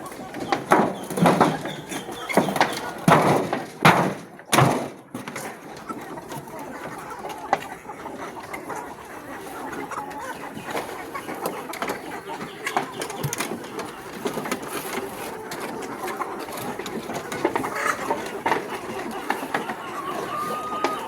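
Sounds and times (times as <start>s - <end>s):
chickens clucking: 0.0s - 21.0s.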